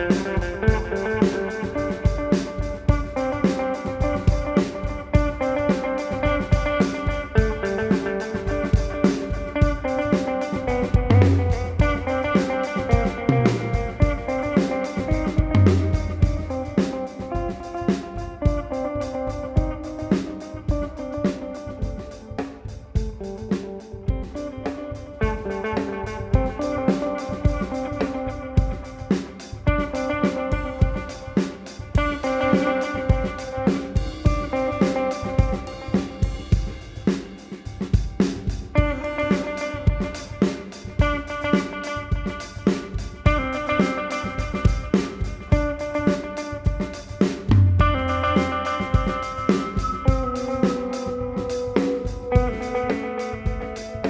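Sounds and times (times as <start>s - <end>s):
ambient electric guitar: 0.0s - 54.0s
steady drum beat: 0.0s - 54.0s
electronic drum shuffling beat: 12.9s - 16.9s, 43.0s - 54.0s.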